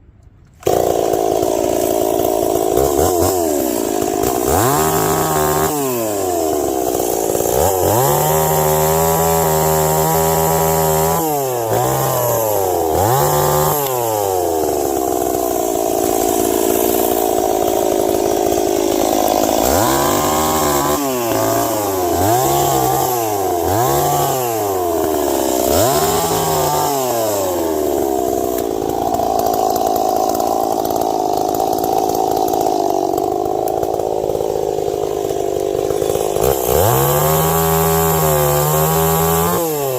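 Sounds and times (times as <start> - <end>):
chainsaw revving: 0.6 - 39.9.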